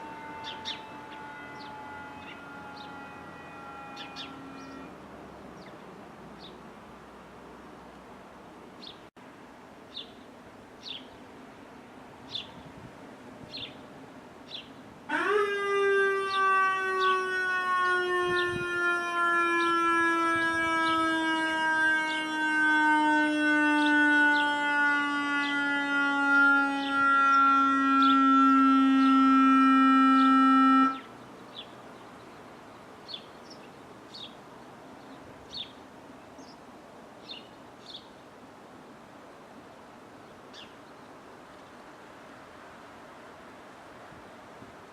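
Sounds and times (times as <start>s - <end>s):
electronic siren tone: 0.0s - 5.0s, 15.1s - 31.0s
small birds chirping: 0.4s - 0.9s, 9.9s - 11.2s, 31.2s - 36.6s.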